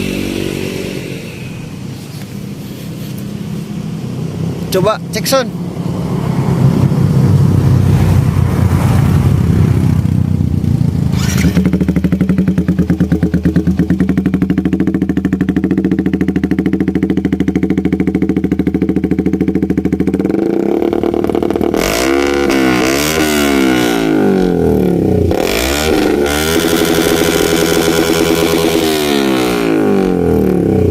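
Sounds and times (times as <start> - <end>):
motorcycle engine revving: 0.0 - 30.9
motorcycle engine idling: 10.0 - 23.2, 23.9 - 30.9.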